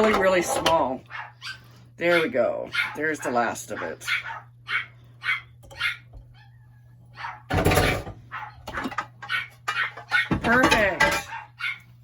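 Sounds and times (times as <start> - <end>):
dog barking: 1.0 - 6.5, 7.1 - 7.6, 8.2 - 10.4, 11.2 - 12.0.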